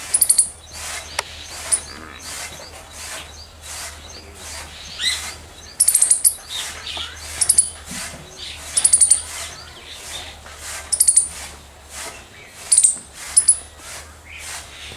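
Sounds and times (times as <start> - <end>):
squirrel high-pitched chirps: 0.0 - 2.7, 4.9 - 7.8, 8.7 - 9.2, 10.9 - 11.3
steady low hum: 0.0 - 7.8.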